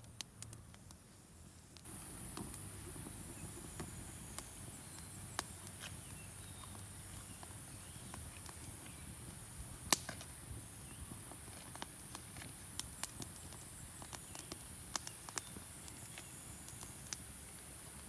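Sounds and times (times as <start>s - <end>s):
small clicks and taps: 11.5s - 17.2s.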